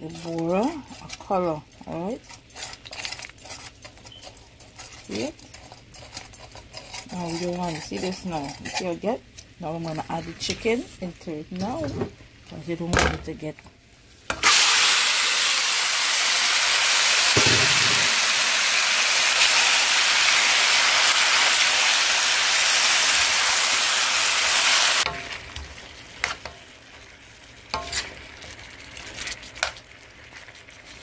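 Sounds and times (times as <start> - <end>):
chicken sizzling in a pot: 14.0 - 31.0.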